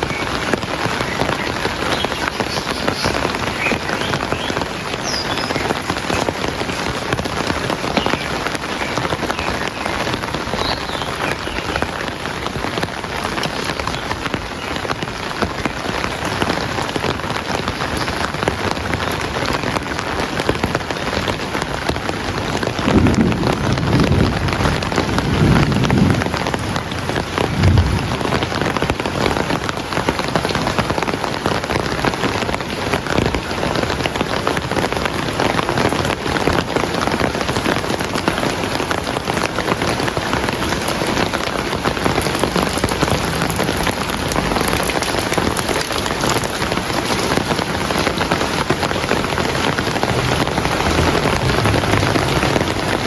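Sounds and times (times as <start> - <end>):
heavy rain patter: 0.0 - 53.0
low rumble of thunder: 22.8 - 29.6, 42.1 - 53.0.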